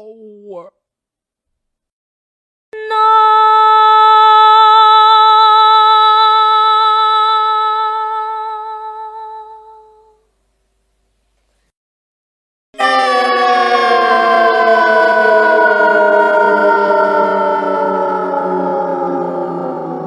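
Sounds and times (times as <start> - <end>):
person singing a held note: 12.8 - 20.0.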